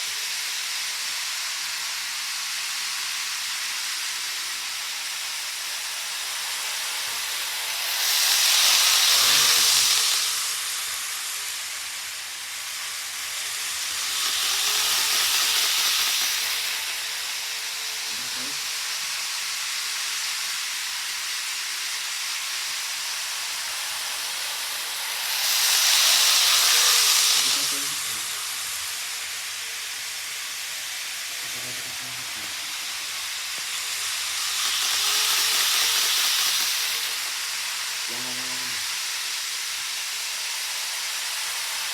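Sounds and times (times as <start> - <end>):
model trains running on track: 0.0 - 41.9.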